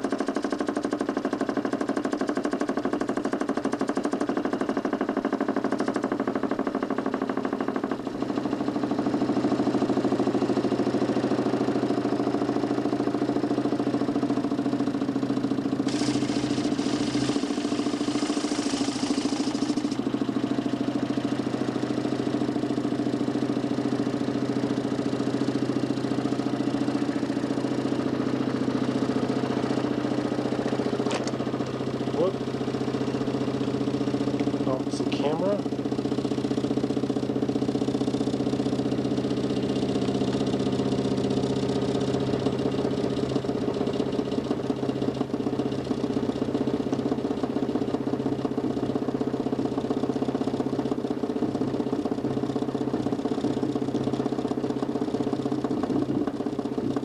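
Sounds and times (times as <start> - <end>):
fast rattle: 0.0 - 8.0, 15.4 - 22.9
motor humming: 15.8 - 20.4.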